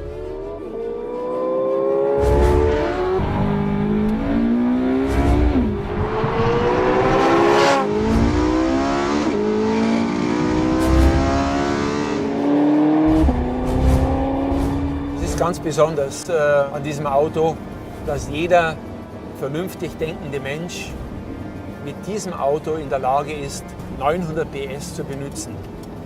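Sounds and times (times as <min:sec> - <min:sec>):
car engine accelerating hard: 0:00.6 - 0:16.2.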